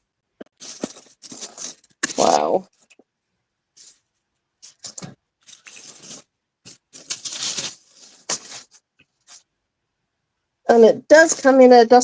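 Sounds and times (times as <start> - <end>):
tissue paper rustling: 0.6 - 3.0, 3.8 - 9.5.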